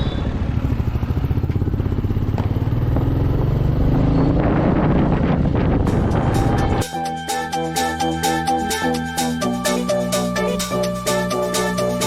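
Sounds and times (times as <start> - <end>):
motorcycle engine accelerating: 0.0 - 6.9.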